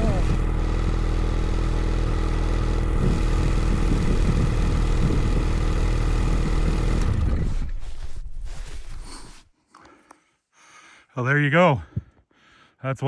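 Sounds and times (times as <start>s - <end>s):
snowmobile engine running under load: 0.0s - 9.0s.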